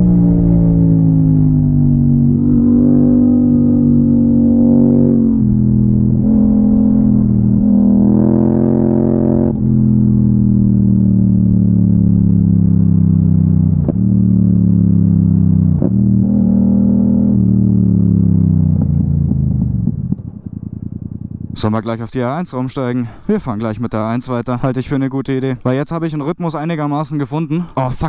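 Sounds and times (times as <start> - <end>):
motorcycle engine running: 0.0 - 21.8.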